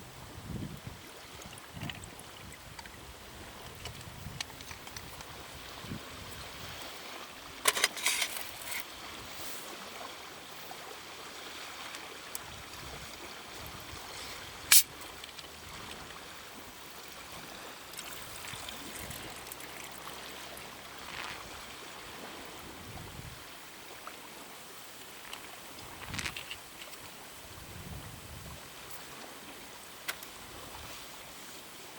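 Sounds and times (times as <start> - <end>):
water trickling and lapping: 0.4 - 31.9
rustling clicks: 7.6 - 8.8, 25.2 - 27.0
sharp click: 14.7 - 14.9.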